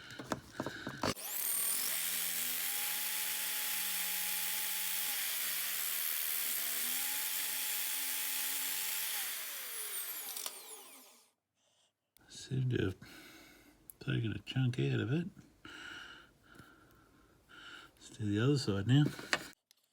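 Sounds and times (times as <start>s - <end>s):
drill bit sharpener grinding: 0.0s - 11.2s.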